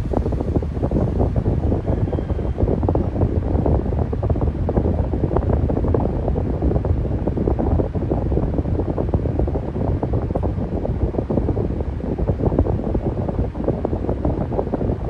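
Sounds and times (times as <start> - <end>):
electric fan running: 0.0 - 15.0.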